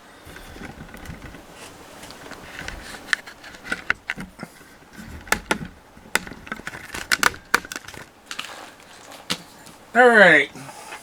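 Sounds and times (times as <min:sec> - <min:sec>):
flight helmet clicking and knocking: 0:00.3 - 0:09.8.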